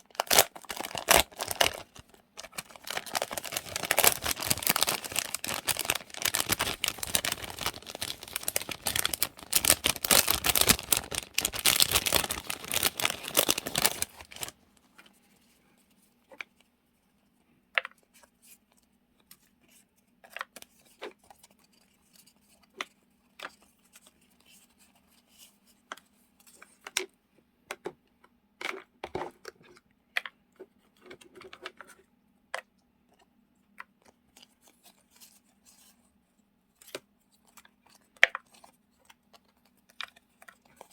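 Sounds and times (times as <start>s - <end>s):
packaging crinkling and rustling: 0.0s - 14.6s.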